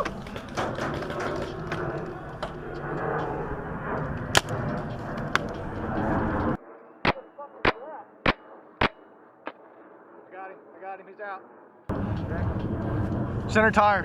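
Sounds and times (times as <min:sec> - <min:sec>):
paintball marker shots: 0:07.0 - 0:09.6
sharp cracks: 0:07.0 - 0:09.7.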